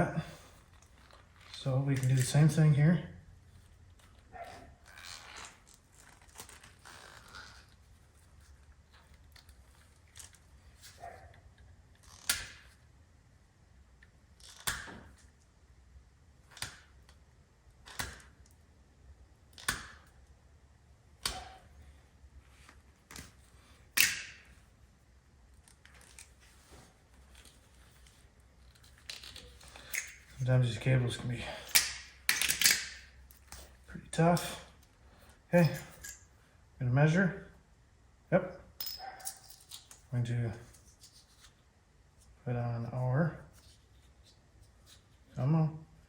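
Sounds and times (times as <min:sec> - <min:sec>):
cable cutter snips: 0:14.4 - 0:15.0
soft handling noise: 0:21.4 - 0:31.7.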